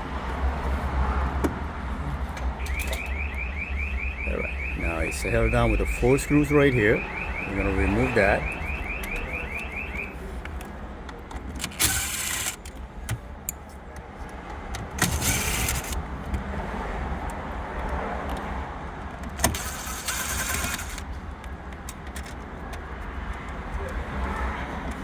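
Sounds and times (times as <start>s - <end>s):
power screwdriver whirring: 11.7s - 12.6s.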